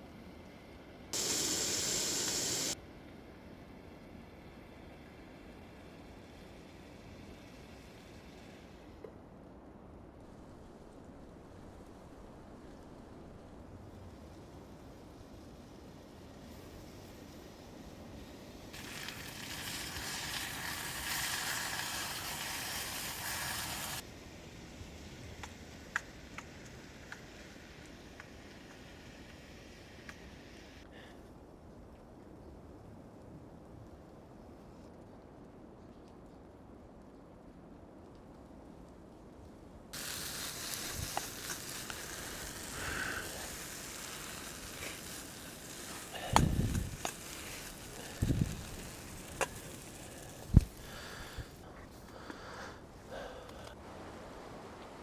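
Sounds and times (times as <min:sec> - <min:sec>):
fire crackling: 0:01.2 - 0:02.8, 0:03.5 - 0:31.1, 0:39.8 - 0:55.0
sizzling hiss: 0:01.2 - 0:09.1, 0:14.1 - 0:31.1, 0:40.0 - 0:53.8.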